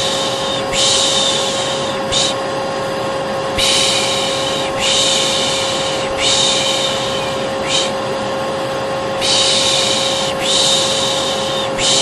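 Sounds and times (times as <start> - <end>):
vacuum cleaner motor drone: 0.0 - 12.0
person shushing: 3.6 - 8.0, 9.2 - 12.0.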